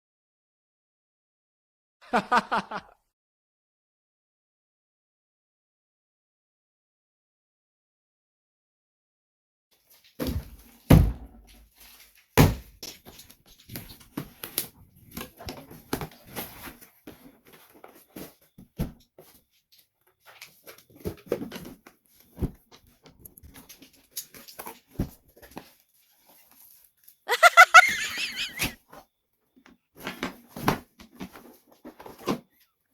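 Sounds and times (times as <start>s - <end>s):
objects knocking and rustling: 10.0s - 19.4s, 20.2s - 26.7s, 30.0s - 32.5s.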